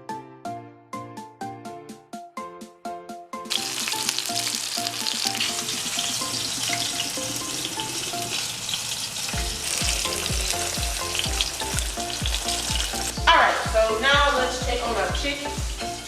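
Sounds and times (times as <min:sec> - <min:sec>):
background music: 0:00.0 - 0:16.0
chicken frying in hot grease: 0:03.5 - 0:13.3, 0:14.8 - 0:16.0
bass beat: 0:09.4 - 0:16.0.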